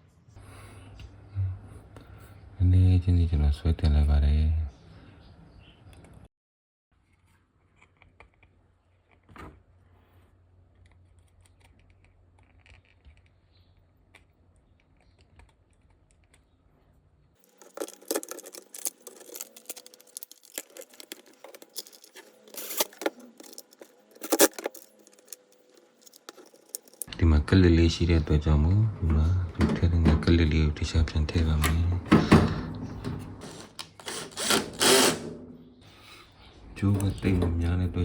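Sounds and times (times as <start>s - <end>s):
plastic and metal clicks: 17.5s - 27.1s.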